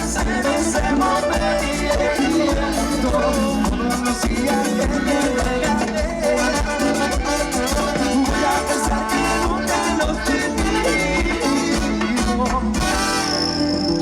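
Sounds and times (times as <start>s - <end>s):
hand percussion beat: 0.0s - 14.0s
latin dance orchestra playing: 0.0s - 14.0s.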